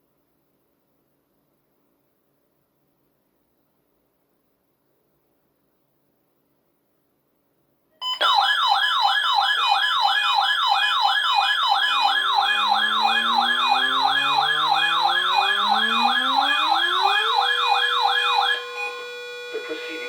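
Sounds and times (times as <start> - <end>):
electronic wail sweeping up and down: 8.2 - 20.0
steady high tone: 9.7 - 20.0
low tones gliding upward: 11.9 - 20.0.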